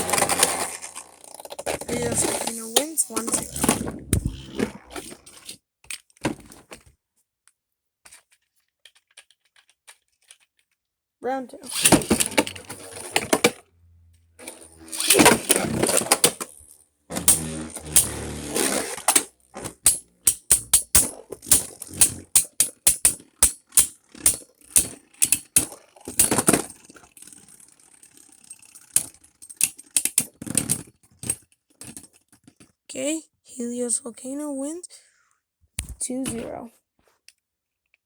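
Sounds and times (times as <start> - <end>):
spinning tops launching: 11.6 - 13.6, 14.4 - 29.5
spinning tops clacking: 14.4 - 30.2.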